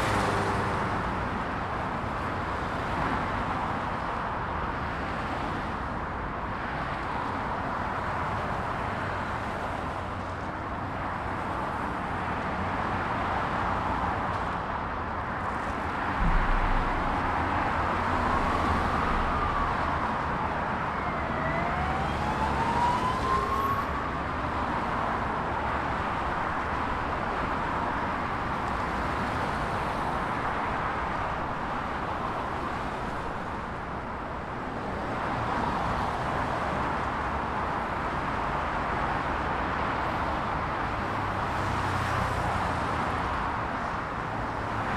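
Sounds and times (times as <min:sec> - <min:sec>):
dense motorway traffic: 0:00.0 - 0:44.9
heavy low thud: 0:16.1 - 0:20.2.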